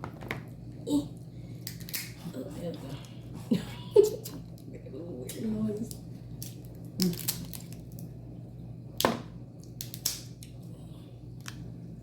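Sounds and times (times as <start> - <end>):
crab shells cracking: 1.6 - 2.2, 6.4 - 8.1, 9.6 - 10.5.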